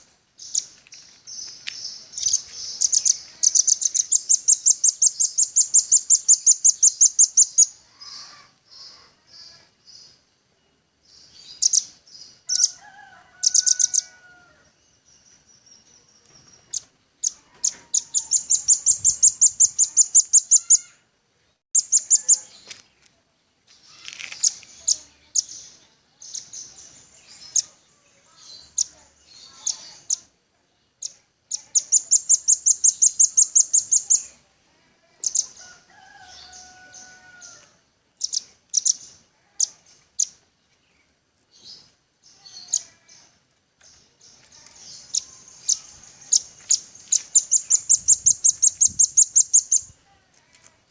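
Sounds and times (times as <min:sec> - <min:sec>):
bird rattling high calls: 0:13.4 - 0:14.4, 0:16.7 - 0:21.0, 0:44.6 - 0:49.9
bird chips: 0:23.7 - 0:27.7, 0:43.8 - 0:49.9.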